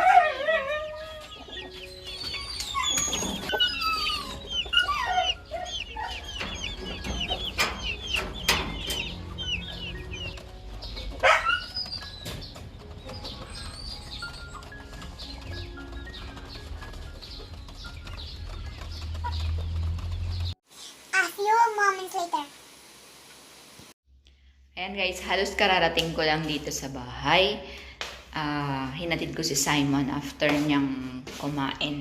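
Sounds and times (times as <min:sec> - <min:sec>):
chickens clucking: 0:00.7 - 0:19.6.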